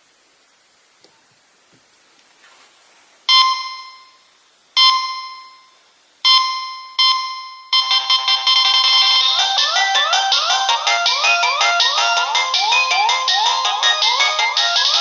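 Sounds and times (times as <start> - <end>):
mobile phone ringtone: 3.3 - 4.2, 4.8 - 15.0.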